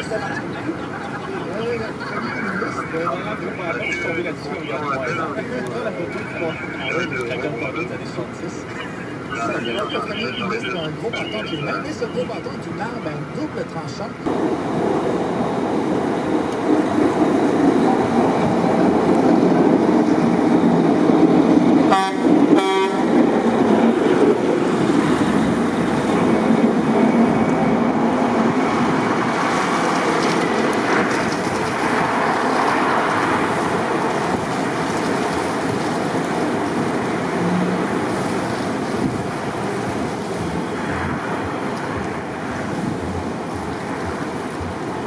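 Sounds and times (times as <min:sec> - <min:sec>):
traffic noise: 0:00.0 - 0:45.0
wind: 0:00.0 - 0:45.0
car horn toots: 0:21.9 - 0:23.1.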